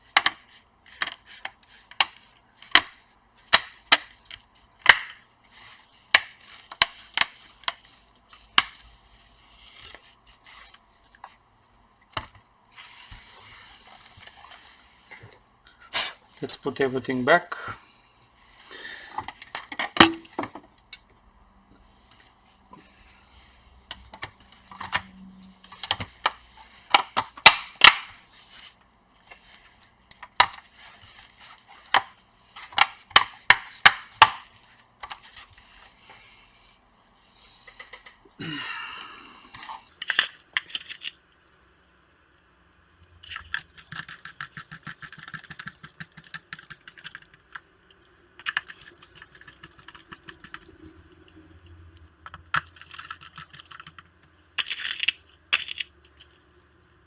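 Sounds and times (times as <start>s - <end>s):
plastic laptop parts clicking: 0.1s - 4.2s, 4.8s - 5.2s, 25.8s - 28.2s, 43.3s - 50.7s, 52.2s - 56.3s.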